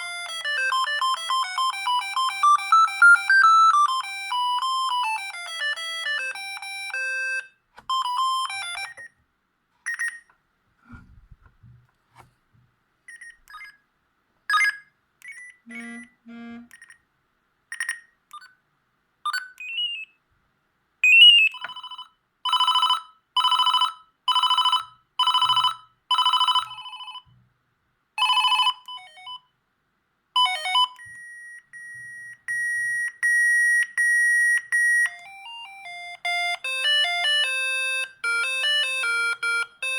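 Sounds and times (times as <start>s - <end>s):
phone ringtone melodies: 0.0s - 9.1s, 15.7s - 16.5s, 21.4s - 27.2s, 28.2s - 29.4s, 30.4s - 39.9s.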